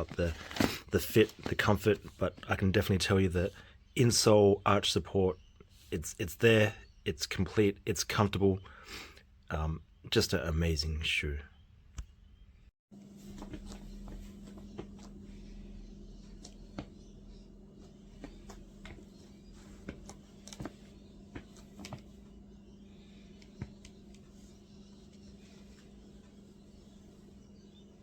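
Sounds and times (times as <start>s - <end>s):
steady low hum: 13.0s - 28.0s.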